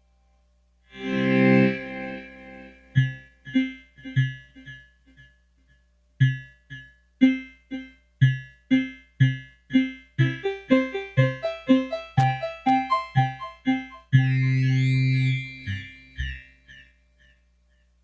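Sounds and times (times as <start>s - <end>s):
synthesizer electric piano notes: 9.7s - 17.4s.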